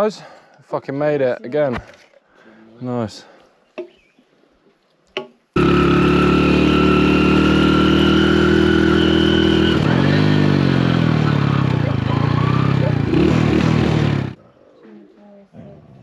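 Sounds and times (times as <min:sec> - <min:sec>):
motorcycle engine running: 0:05.6 - 0:14.4.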